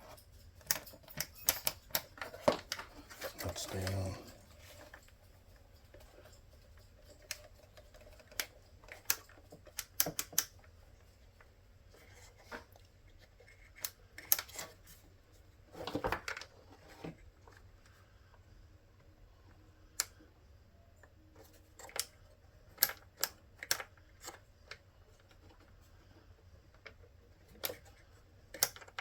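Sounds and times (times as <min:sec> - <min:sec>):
plastic parts clicking: 0:07.1 - 0:10.7, 0:26.7 - 0:29.0.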